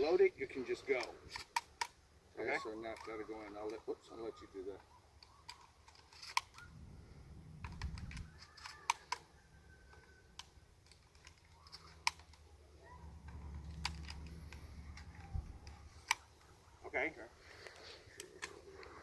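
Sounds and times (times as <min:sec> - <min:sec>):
shotgun shells clicking into magazine: 0:07.6 - 0:09.3, 0:09.9 - 0:12.5, 0:13.2 - 0:16.4
low rumbling handling noise: 0:11.3 - 0:16.8.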